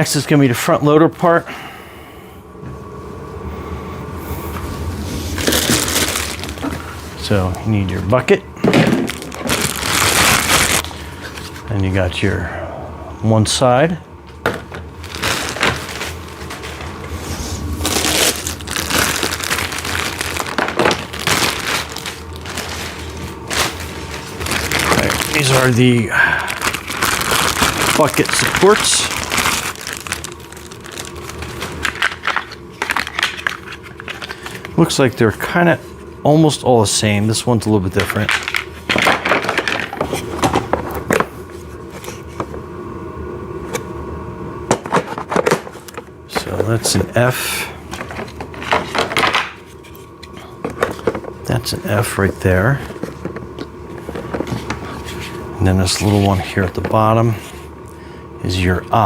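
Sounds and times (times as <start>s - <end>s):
faint steady hum: 0.0s - 59.0s
packaging rustling and crinkling: 4.9s - 7.7s, 8.6s - 11.7s, 14.6s - 34.9s, 37.9s - 42.5s, 47.8s - 57.7s.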